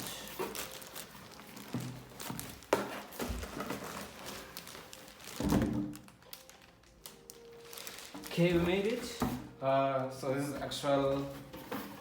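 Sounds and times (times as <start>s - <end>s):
cardboard rustling and scraping: 0.0s - 5.8s, 7.8s - 9.5s, 10.3s - 12.0s.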